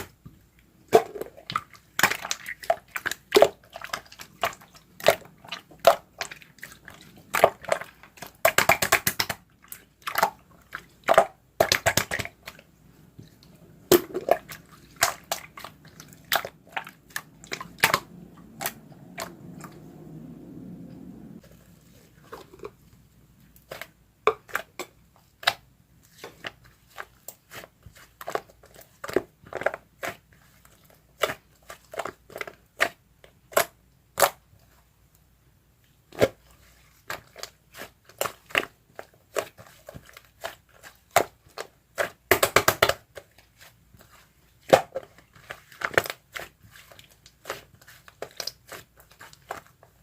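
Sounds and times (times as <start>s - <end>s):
slime squishing with clicks and pops: 0.0s - 19.8s, 23.6s - 30.3s, 31.1s - 34.5s, 37.0s - 43.3s
soft low rumble: 15.4s - 22.3s.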